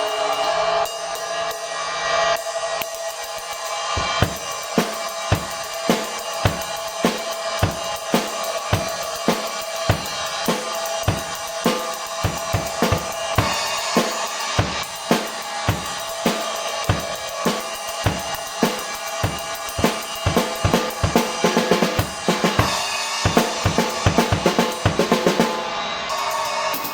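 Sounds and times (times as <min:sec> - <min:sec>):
cymbal ringing: 0:00.0 - 0:26.9
kick and snare hits: 0:04.0 - 0:04.5, 0:05.3 - 0:05.6, 0:06.5 - 0:06.7, 0:07.6 - 0:08.0, 0:08.7 - 0:09.0, 0:09.9 - 0:10.2, 0:11.0 - 0:11.4, 0:12.2 - 0:13.7, 0:14.6 - 0:16.1, 0:16.9 - 0:17.2, 0:18.0 - 0:25.4
drum kit groove: 0:04.0 - 0:25.8.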